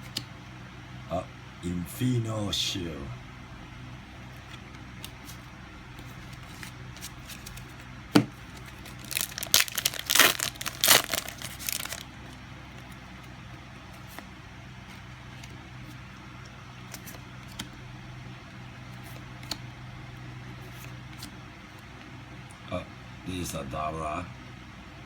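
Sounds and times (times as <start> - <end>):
foil wrapper crinkling and tearing: 8.5 - 12.2.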